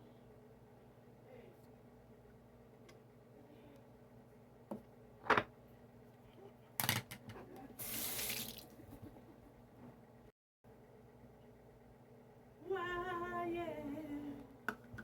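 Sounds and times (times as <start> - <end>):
water running from tap: 7.8 - 8.7.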